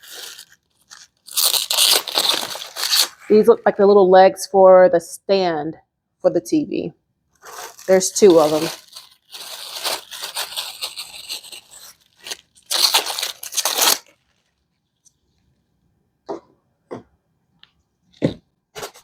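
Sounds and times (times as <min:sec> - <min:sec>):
packaging crinkling rustles: 0:00.0 - 0:03.3, 0:07.3 - 0:15.5.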